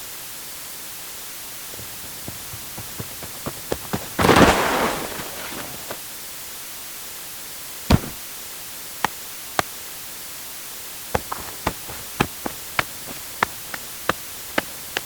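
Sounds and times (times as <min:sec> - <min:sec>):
heavy thud: 0:07.9 - 0:08.2, 0:11.2 - 0:14.2.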